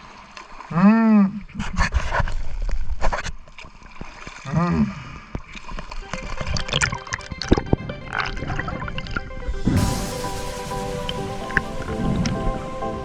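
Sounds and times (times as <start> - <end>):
water sloshing and splashing: 0.0 - 13.0
short rising and falling tones: 9.4 - 13.0.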